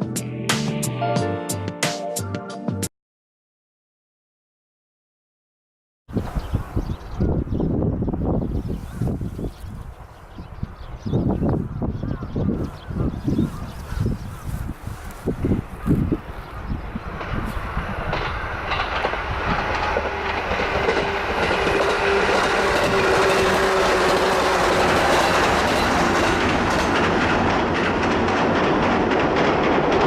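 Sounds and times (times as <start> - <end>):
electric train passing: 14.0 - 30.0.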